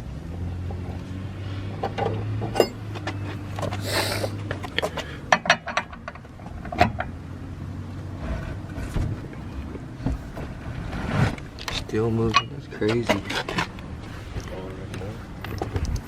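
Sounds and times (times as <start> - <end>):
lug wrench knocking on metal: 5.3 - 7.1.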